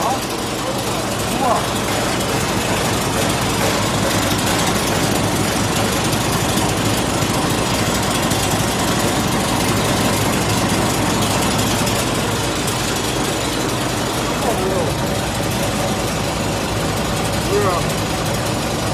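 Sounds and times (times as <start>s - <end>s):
wire granulator machine running: 0.0s - 18.9s.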